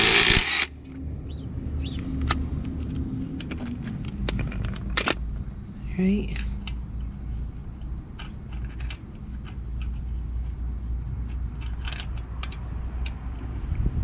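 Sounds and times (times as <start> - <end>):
high hiss: 0.0 - 13.9
steady low rumble: 0.0 - 14.0
light metallic clicks and clinks: 11.3 - 13.2.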